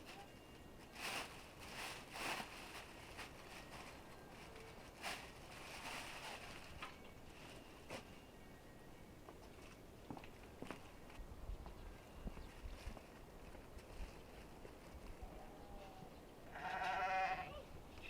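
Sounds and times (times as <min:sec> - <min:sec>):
rustling scrapes: 0:00.0 - 0:08.2
faint outdoor background noise: 0:00.0 - 0:18.0.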